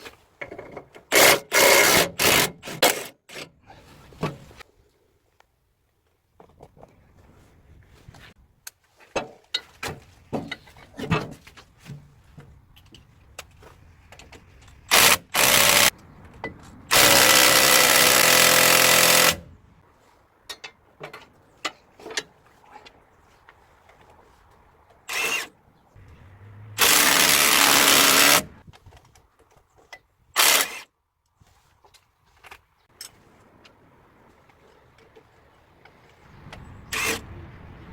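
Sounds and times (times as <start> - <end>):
hand tools clicking and knocking: 8.7 - 19.5, 26.8 - 30.8
power tool running: 14.9 - 15.9, 16.9 - 19.5, 26.0 - 28.6.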